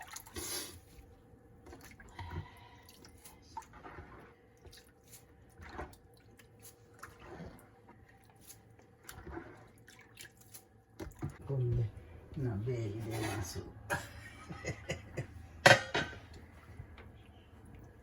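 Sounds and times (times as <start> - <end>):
water dripping: 0.0 - 0.4
wet seaweed squishing: 0.0 - 11.4.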